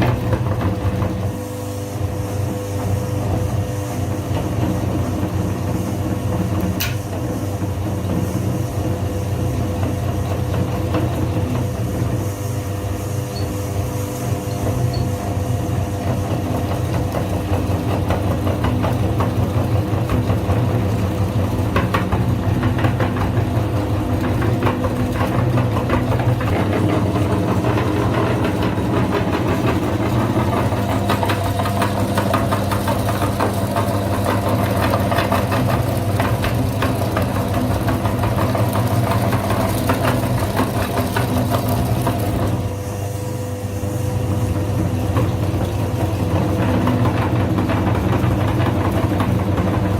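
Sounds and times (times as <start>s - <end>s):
kitchen grinder motor running: 0.0s - 49.9s
grinder contents crackling and rattling: 24.0s - 42.7s.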